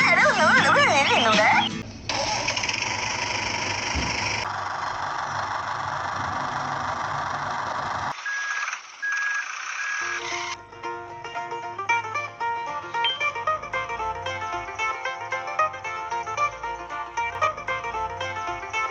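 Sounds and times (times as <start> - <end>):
music: 0.0 - 1.8, 10.6 - 18.9
engine running with low hum: 1.8 - 8.2, 11.7 - 18.9
short high beeps: 13.0 - 13.4.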